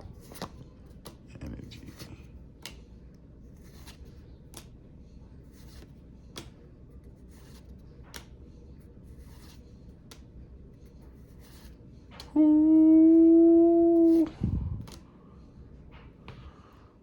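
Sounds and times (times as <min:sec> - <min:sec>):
cards snapping as flipped: 0:01.9 - 0:03.0, 0:03.6 - 0:04.8, 0:05.6 - 0:06.6, 0:07.4 - 0:08.4, 0:09.2 - 0:10.3, 0:14.8 - 0:15.1.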